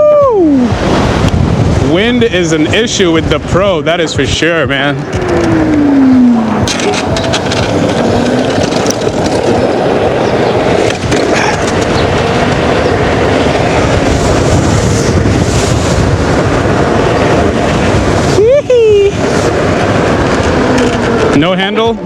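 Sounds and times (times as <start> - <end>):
wind buffeting microphone: 0.0 - 22.0
falling tone: 2.9 - 22.0.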